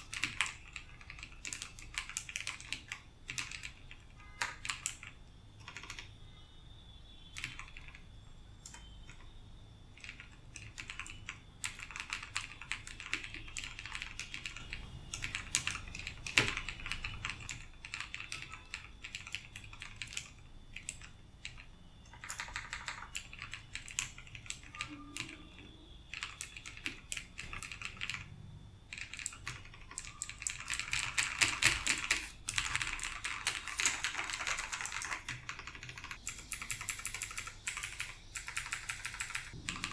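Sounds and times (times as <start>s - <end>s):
clicky mechanical keyboard typing: 0.0s - 6.2s, 7.4s - 39.9s.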